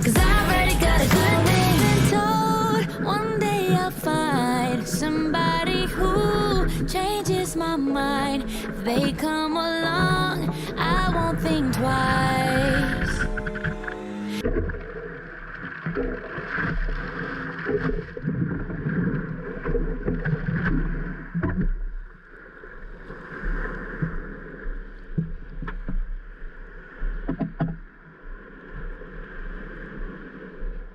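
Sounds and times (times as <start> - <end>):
water splashing: 0.0 - 21.7.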